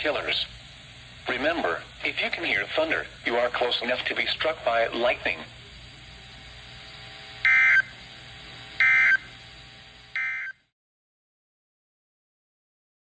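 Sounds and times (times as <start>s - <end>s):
digital data tone bursts: 3.3s - 9.4s, 10.1s - 10.7s.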